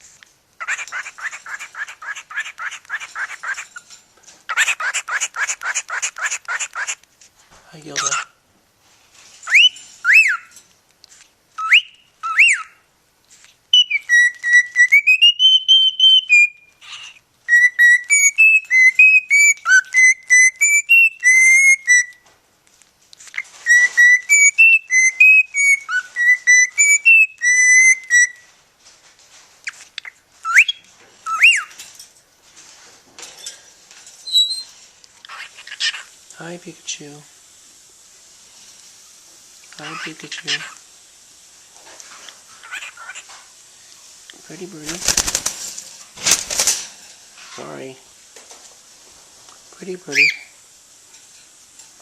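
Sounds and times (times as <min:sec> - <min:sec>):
cockatiel whistling: 0:09.5 - 0:10.5, 0:11.6 - 0:12.8, 0:13.7 - 0:22.2, 0:23.4 - 0:28.5, 0:30.4 - 0:31.7, 0:34.3 - 0:34.7, 0:50.1 - 0:50.5.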